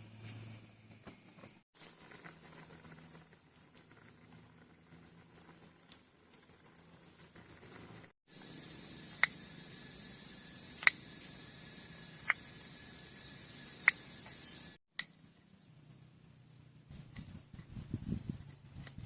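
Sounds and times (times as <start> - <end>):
crickets chirping: 0.2 - 17.4
sharp ticks: 9.0 - 9.5, 10.7 - 11.2, 12.2 - 12.5, 13.7 - 14.4.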